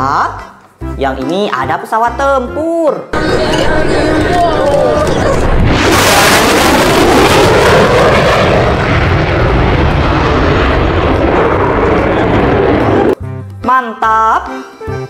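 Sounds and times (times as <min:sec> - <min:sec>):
jet aircraft flying past: 0:03.2 - 0:13.2.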